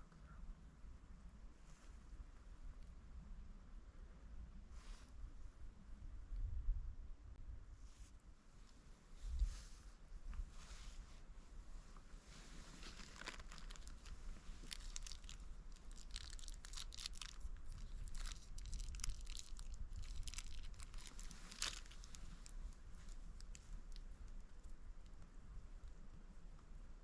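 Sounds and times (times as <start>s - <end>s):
rustling and crinkling: 7.8s - 26.7s.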